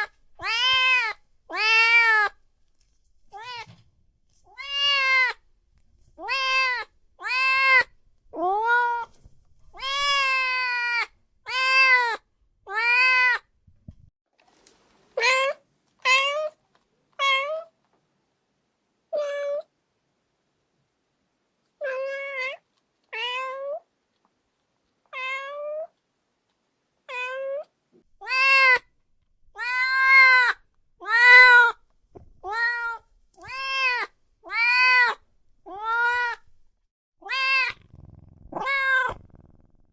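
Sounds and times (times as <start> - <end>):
cats meowing: 0.0 - 2.3, 6.2 - 9.1, 9.8 - 13.4, 27.1 - 28.8, 29.6 - 31.8, 32.4 - 36.4, 37.2 - 39.4.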